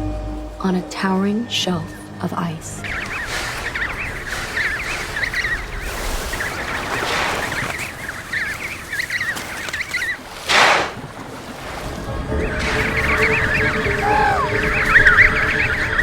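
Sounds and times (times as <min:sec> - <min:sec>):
penguin chicks calling: 0:01.6 - 0:11.1, 0:12.3 - 0:16.0.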